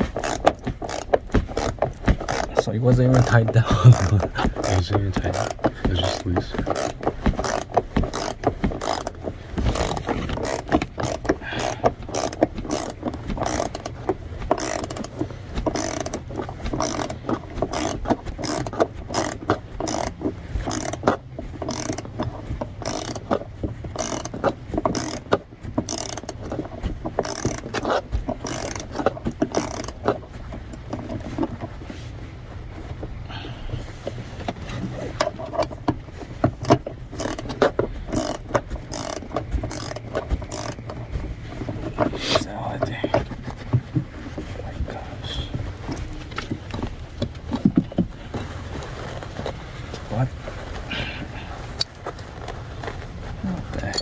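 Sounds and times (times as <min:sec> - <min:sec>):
ratchet wrench clicking: 0:00.1 - 0:26.6, 0:27.2 - 0:30.2, 0:36.6 - 0:41.0.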